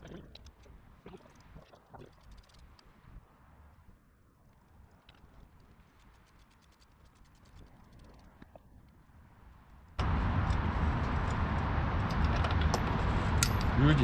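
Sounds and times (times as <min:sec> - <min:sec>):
loud rushing hum: 0:10.0 - 0:14.0
light clicks of metal mechanisms: 0:10.3 - 0:13.9.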